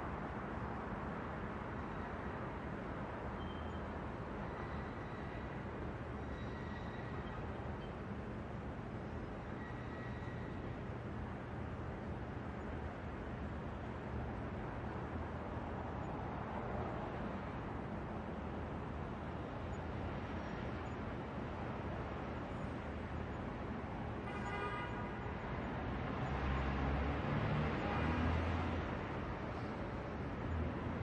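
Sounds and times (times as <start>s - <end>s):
passing cars: 24.3s - 31.0s.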